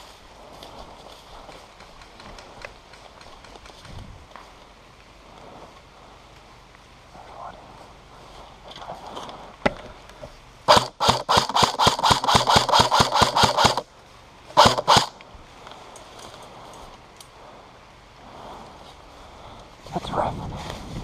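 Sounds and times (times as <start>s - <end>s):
airsoft gun firing: 10.7s - 13.9s, 14.5s - 15.2s.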